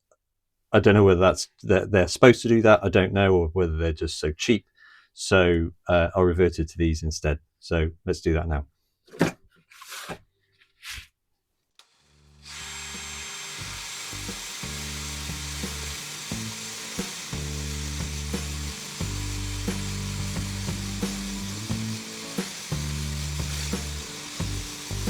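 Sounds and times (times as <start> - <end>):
drill wire brush on metal: 11.8 - 25.0
background music: 12.5 - 25.0.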